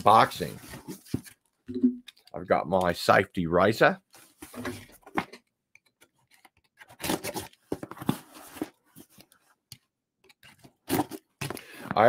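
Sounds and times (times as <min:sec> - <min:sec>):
clicks and handling: 0:00.9 - 0:02.4, 0:04.4 - 0:11.6.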